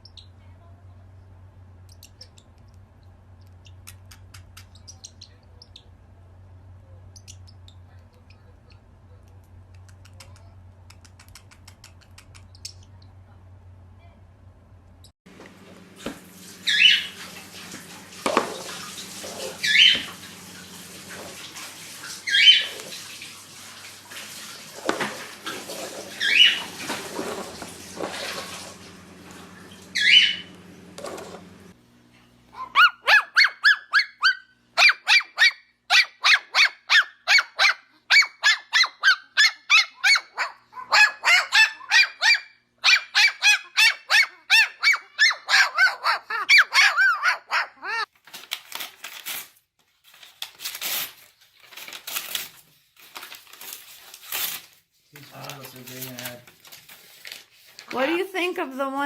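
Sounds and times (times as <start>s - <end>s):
fast short repeated bird calls: 16.6s - 17.2s, 19.2s - 20.1s, 22.0s - 23.0s, 25.5s - 26.9s, 30.0s - 30.5s.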